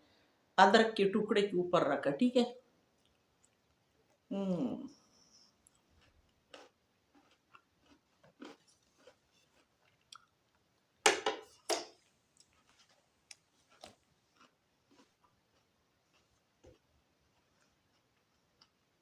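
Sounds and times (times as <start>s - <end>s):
biting ginger: 5.6s - 10.6s, 12.4s - 19.0s.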